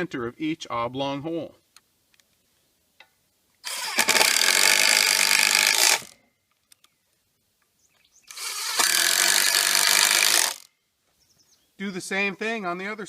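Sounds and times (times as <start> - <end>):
power driver driving screws into wood: 3.6 - 6.2, 8.3 - 10.7.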